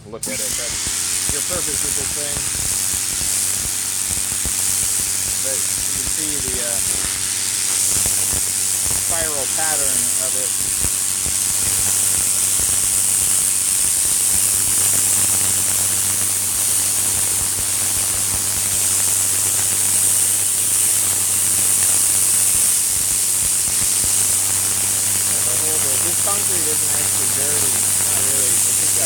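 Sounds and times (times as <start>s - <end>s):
pump motor hum: 0.0s - 29.0s
pressure washer spray hissing: 0.1s - 29.0s.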